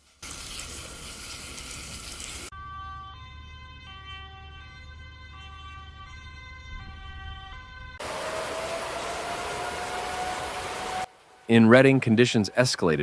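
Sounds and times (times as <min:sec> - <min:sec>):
two-tone emergency siren: 0:02.5 - 0:11.1
rushing noise: 0:08.0 - 0:11.6.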